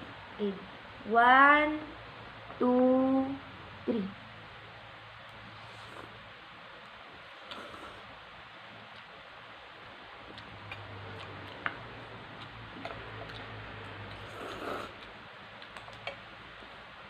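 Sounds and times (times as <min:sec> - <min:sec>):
low hum and hiss: 0:00.0 - 0:17.0
eating clicks and ticks: 0:15.0 - 0:16.2.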